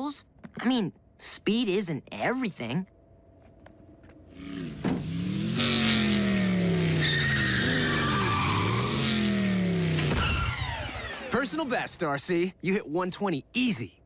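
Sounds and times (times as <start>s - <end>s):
motorcycle engine passing: 4.3s - 11.3s
tyres screeching: 6.9s - 11.4s.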